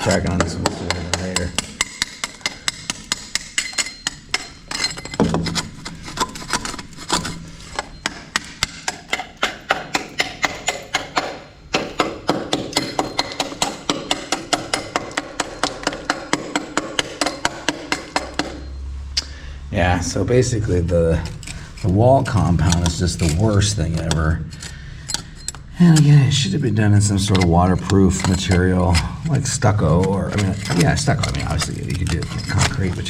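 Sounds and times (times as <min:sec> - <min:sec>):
rough scraping: 0:00.0 - 0:10.7, 0:20.0 - 0:33.0
hand tool tapping on wall compound: 0:00.0 - 0:19.3, 0:21.2 - 0:33.0.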